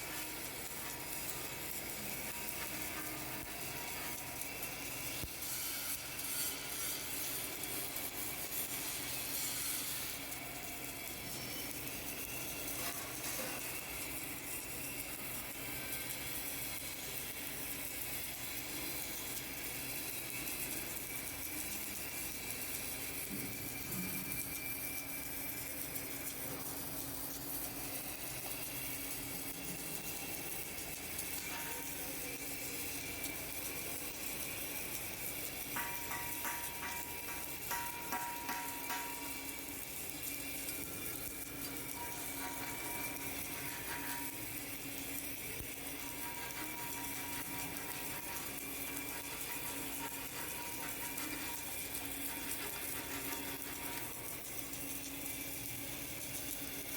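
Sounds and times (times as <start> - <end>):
welding hiss: 0.0 - 56.9.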